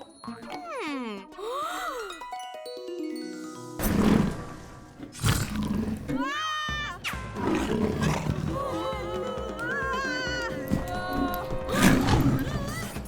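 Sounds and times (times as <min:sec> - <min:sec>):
playful cartoon music: 0:00.0 - 0:13.0
cartoon dragon roar: 0:03.8 - 0:06.3.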